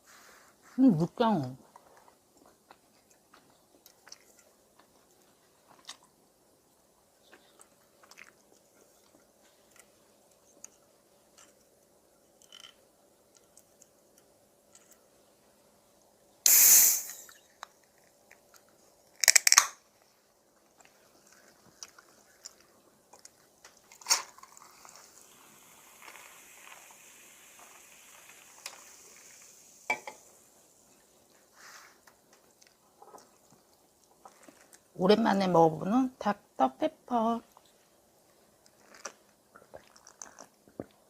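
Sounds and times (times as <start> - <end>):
can opening with hiss: 16.4 - 17.7, 19.2 - 19.8, 23.8 - 30.8
soda fizzing: 16.5 - 17.4, 23.9 - 32.0.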